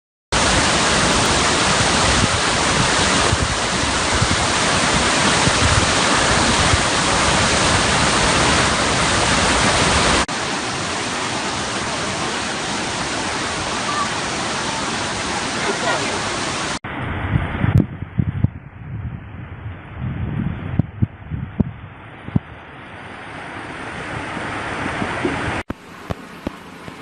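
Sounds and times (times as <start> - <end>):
waterfall rushing: 0.4 - 16.8.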